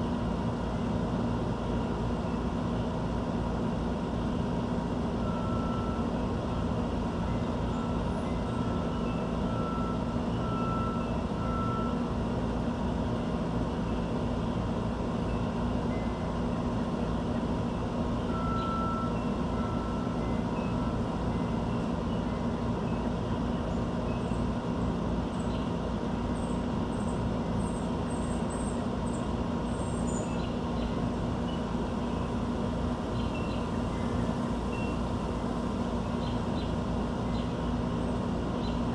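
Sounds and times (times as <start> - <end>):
urban mechanical hum: 0.0 - 38.9
faint bird chirps: 18.3 - 24.5, 29.8 - 32.4, 33.1 - 35.1.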